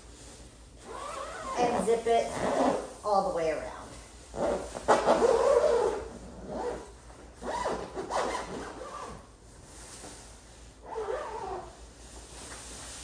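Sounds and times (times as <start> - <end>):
fabric rubbing: 0.0 - 13.0
zipper being pulled: 0.8 - 3.0, 4.3 - 9.3, 10.8 - 11.8.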